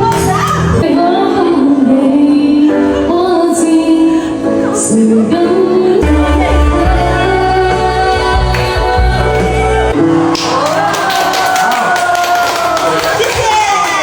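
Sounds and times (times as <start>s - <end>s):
woman singing: 0.0s - 10.0s
karaoke backing music: 0.0s - 14.0s.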